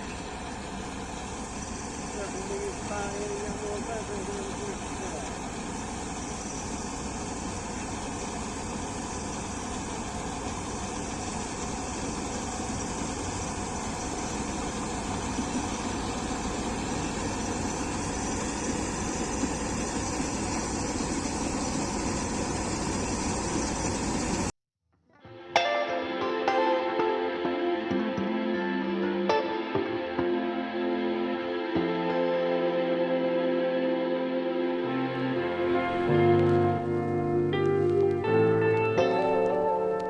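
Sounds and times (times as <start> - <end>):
combine harvester running: 0.0 - 24.5, 34.8 - 40.0.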